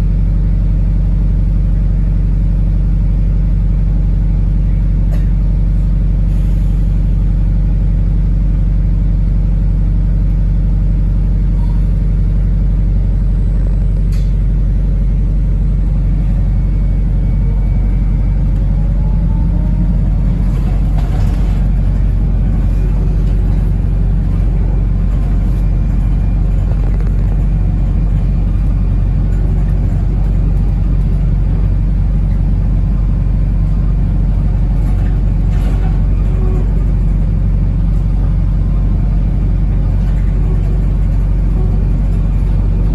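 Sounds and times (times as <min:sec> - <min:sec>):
bus interior hum and rumble: 0:00.0 - 0:42.9
faint rising whines: 0:15.2 - 0:34.4.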